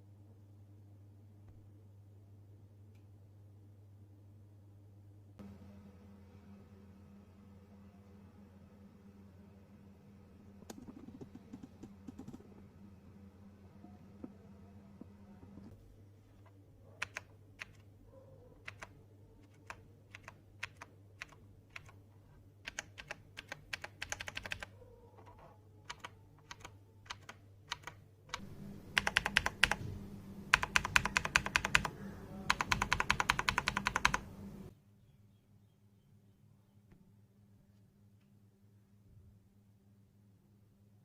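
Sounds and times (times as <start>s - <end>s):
clicky mechanical keyboard typing: 10.7s - 12.5s, 17.0s - 17.9s, 18.6s - 22.0s, 22.6s - 29.8s, 30.5s - 34.3s.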